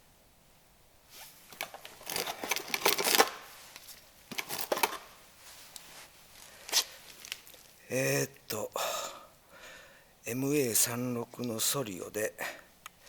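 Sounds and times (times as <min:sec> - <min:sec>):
clicking and rattling handling noises: 0:01.5 - 0:05.1.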